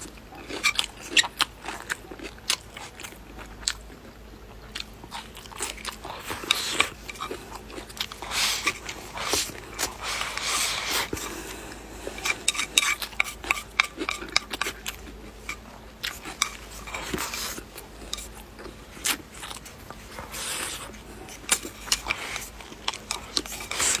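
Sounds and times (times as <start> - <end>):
chewing: 0.0 - 24.0
chopsticks clicking against a bowl: 12.2 - 17.3.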